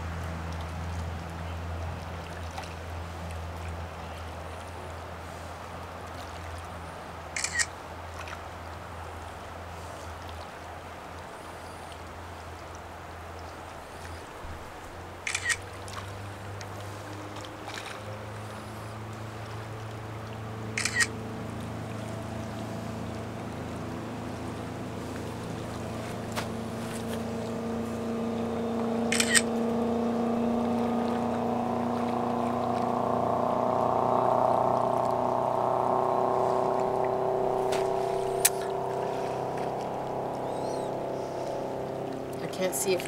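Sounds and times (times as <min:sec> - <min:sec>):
motorboat engine droning: 0:00.0 - 0:43.0
sharp clicks: 0:07.4 - 0:07.7, 0:15.3 - 0:15.6, 0:20.8 - 0:21.1, 0:29.1 - 0:29.5.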